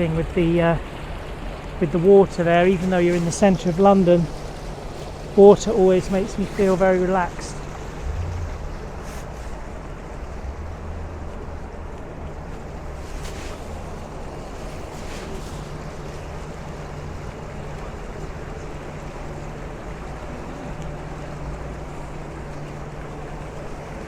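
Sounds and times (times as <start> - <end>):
fountain water splashing: 0.0 - 24.0
low steady hum: 4.6 - 13.0.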